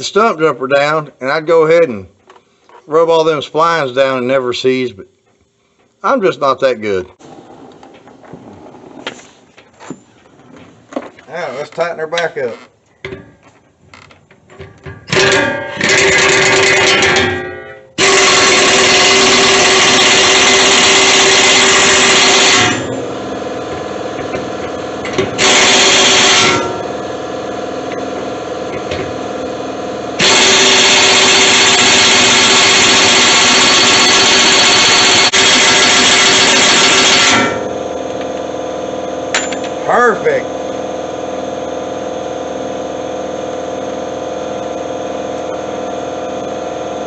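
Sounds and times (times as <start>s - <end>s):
impact wrench running: 14.0s - 47.0s
quiet steady running sound: 20.8s - 32.3s.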